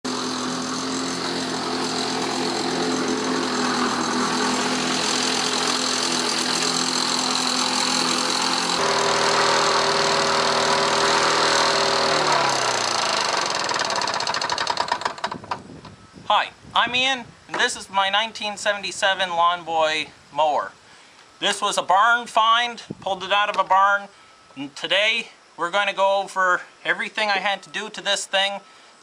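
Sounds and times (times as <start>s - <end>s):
lawn mower engine running: 0.0s - 15.6s.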